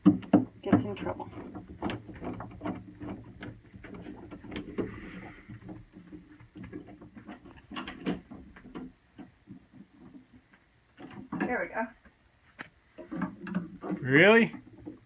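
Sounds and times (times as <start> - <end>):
clicks and rattles of parts handled: 0.0 - 11.5.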